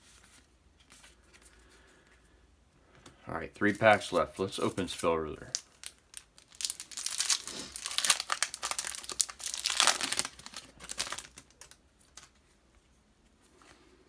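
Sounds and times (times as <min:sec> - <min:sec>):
foil wrapper crinkling and tearing: 0:04.0 - 0:12.4.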